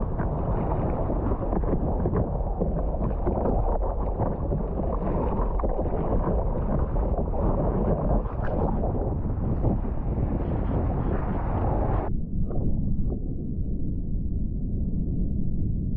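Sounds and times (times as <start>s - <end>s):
water sloshing and splashing: 0.0s - 12.1s
wind rumble on microphone: 0.0s - 15.9s.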